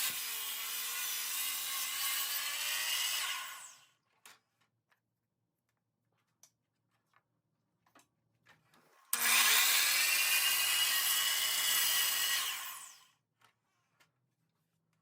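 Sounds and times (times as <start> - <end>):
miter saw cutting wood: 0.0 - 3.8, 9.1 - 13.1.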